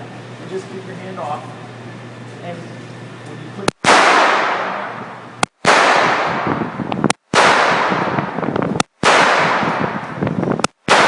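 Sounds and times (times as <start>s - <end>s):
gunshots with ringing echo: 3.8s - 10.2s.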